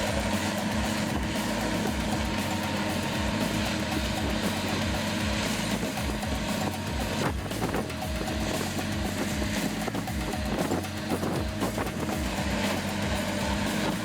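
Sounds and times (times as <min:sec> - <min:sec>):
heavy mulcher engine droning: 0:00.0 - 0:14.0.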